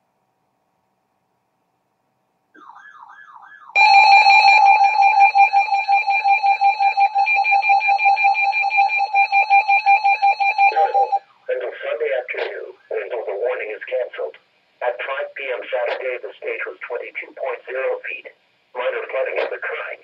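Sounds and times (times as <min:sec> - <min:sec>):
electronic alert tone: 0:03.8 - 0:11.2.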